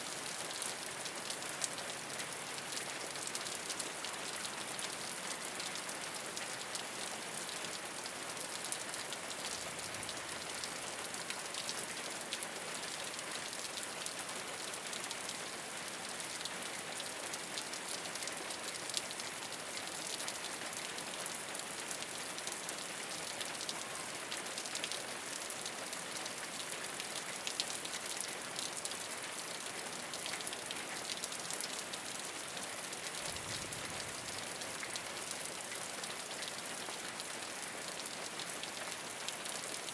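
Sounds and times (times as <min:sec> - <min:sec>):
rain falling on a rooftop: 0:00.0 - 0:39.9.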